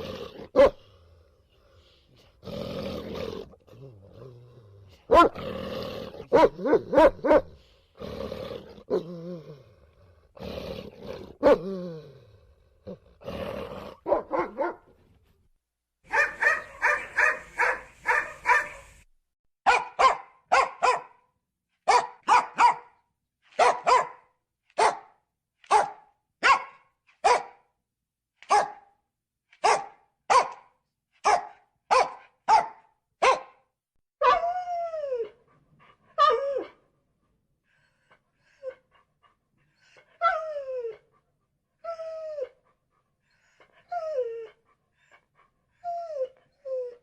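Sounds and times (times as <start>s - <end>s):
dog barking: 0.5s - 0.8s, 5.1s - 5.4s, 6.2s - 7.6s, 11.4s - 11.7s, 14.0s - 14.9s, 16.1s - 18.9s, 19.6s - 27.7s, 28.4s - 29.0s, 29.6s - 34.4s.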